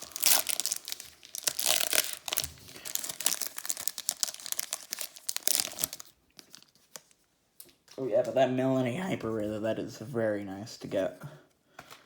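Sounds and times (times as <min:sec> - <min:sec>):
foil wrapper crinkling: 0:00.0 - 0:07.2.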